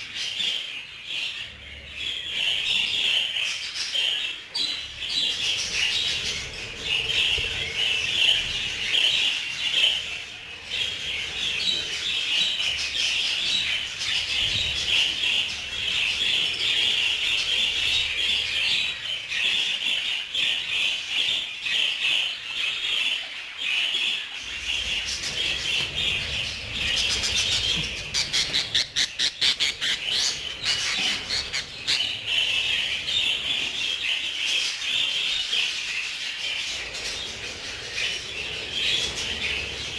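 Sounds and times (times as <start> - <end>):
budgerigars chattering: 0.0 - 39.9
bird squawks: 24.4 - 35.8.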